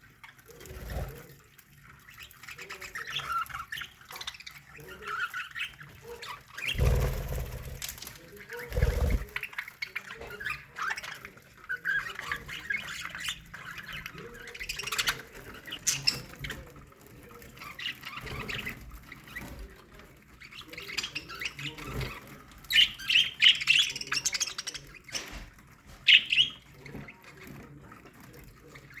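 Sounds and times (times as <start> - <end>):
budgerigars chirping: 20.5 - 27.2.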